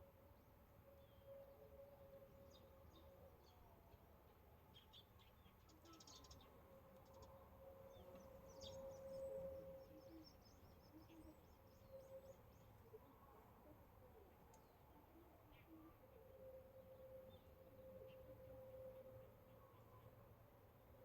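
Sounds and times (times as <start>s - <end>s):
faint steady tone: 0.0s - 21.0s
faint bird chirps: 4.8s - 20.2s.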